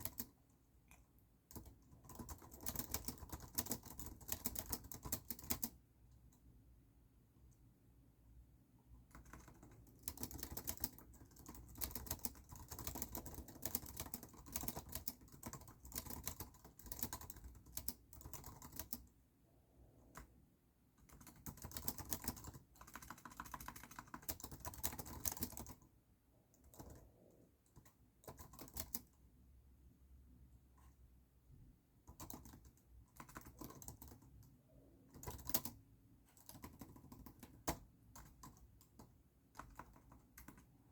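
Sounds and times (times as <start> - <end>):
typing on computer keyboard: 0.0 - 5.8, 9.0 - 19.1, 21.0 - 25.9, 26.5 - 29.2, 32.0 - 40.8.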